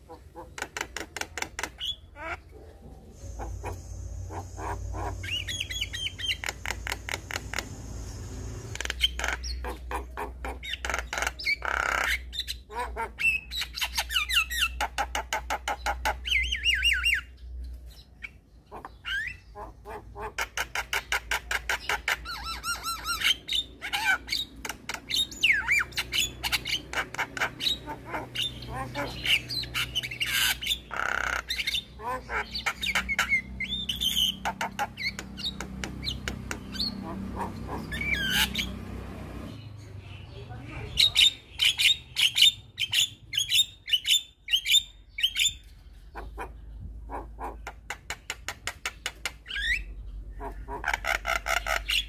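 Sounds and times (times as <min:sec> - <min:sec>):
myna singing squawks and whistles: 0:03.2 - 0:07.2.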